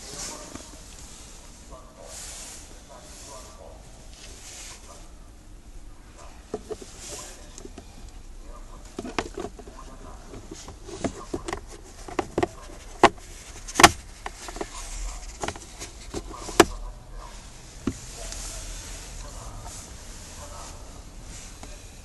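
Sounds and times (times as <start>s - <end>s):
plastic parts clicking and knocking: 8.9s - 16.8s.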